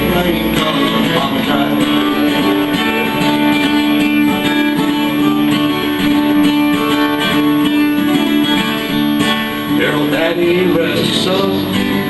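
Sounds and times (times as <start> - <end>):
acoustic guitars strumming: 0.0 - 12.0
long held note: 0.6 - 8.4.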